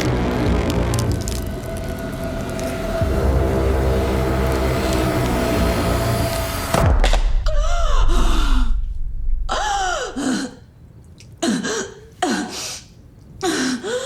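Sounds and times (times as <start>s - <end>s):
woman gasping cries: 7.5s - 8.9s, 9.5s - 10.6s.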